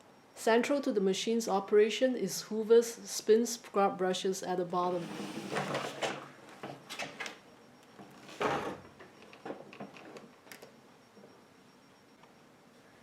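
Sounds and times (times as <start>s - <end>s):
scraping rustle: 4.9s - 6.2s.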